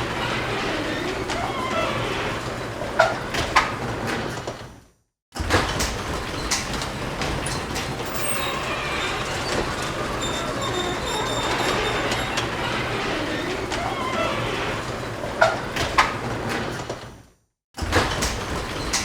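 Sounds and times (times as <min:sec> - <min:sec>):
garage door rumbling on tracks: 0:00.0 - 0:04.6, 0:05.4 - 0:17.1
rollers rattling and clicking: 0:05.8 - 0:16.2
thin high squeaks: 0:06.5 - 0:14.9.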